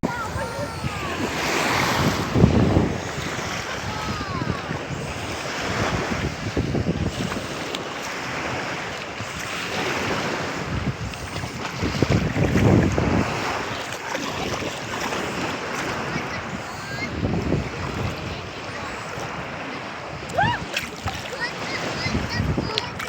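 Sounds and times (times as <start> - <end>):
sea waves washing on shore: 0.0 - 23.0
wind buffeting microphone: 0.0 - 23.0.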